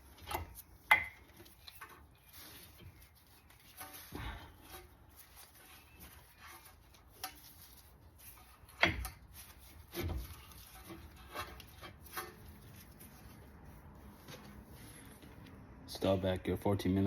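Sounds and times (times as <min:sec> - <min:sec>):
brake parts knocking and clicking: 0:08.4 - 0:13.3.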